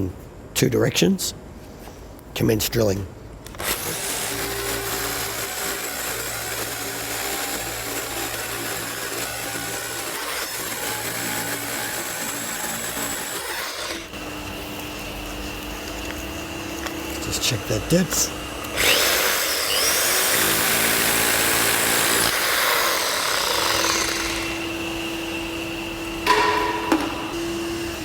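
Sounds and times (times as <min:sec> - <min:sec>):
hammer drill drilling into concrete: 0:03.6 - 0:14.1, 0:18.6 - 0:24.8.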